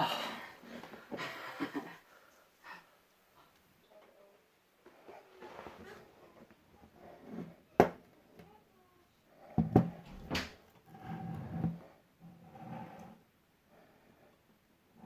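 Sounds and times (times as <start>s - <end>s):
muffled handling and rubbing: 4.8s - 7.7s.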